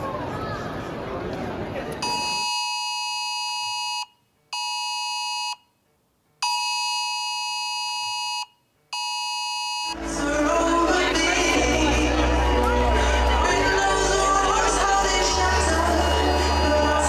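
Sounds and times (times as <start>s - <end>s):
crowd noise: 0.0s - 2.4s, 10.0s - 17.0s
phone buzzing alarm tone: 6.4s - 10.0s
music: 10.0s - 17.0s.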